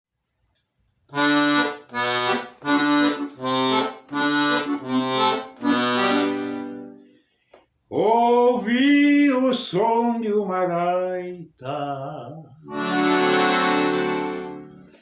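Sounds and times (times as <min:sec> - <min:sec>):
accordion chords: 0:01.1 - 0:07.2, 0:12.6 - 0:15.0.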